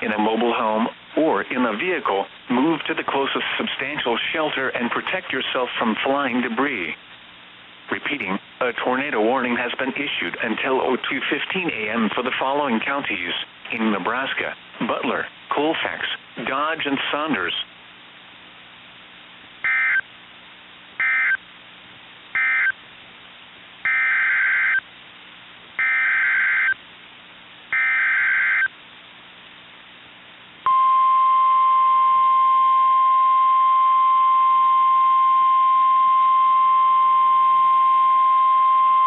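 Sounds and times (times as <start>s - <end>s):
steady warning alarm tone: 19.6s - 20.0s, 21.0s - 21.4s, 22.4s - 22.8s, 23.9s - 24.8s, 25.8s - 26.8s, 27.7s - 28.7s
screeching data bursts: 23.9s - 24.8s, 25.8s - 26.8s.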